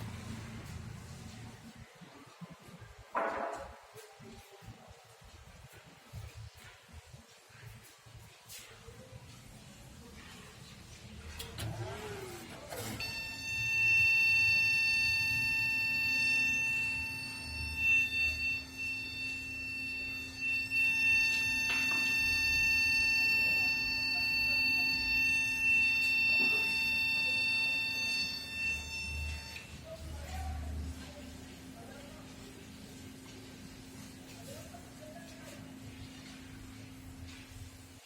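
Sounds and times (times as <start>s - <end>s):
high-pitched computer error beep: 13.0s - 29.7s.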